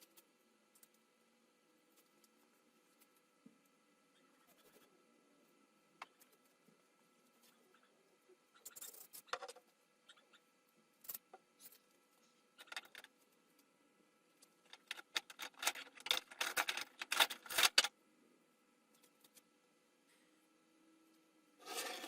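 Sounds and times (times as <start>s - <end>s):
tools clicking and scraping on wood: 14.4s - 17.9s.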